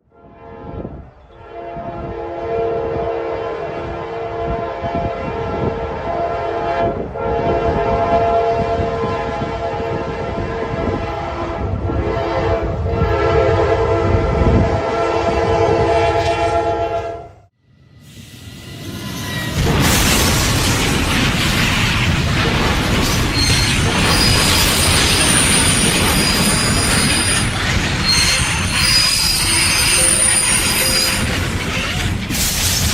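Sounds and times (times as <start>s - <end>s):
train horn blasts: 0.0s - 17.6s
moving train rumble: 0.2s - 32.9s.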